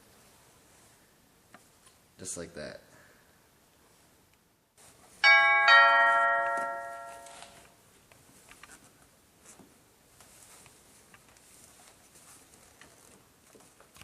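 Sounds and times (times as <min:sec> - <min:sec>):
doorbell ding-dong chime: 0:05.2 - 0:07.6.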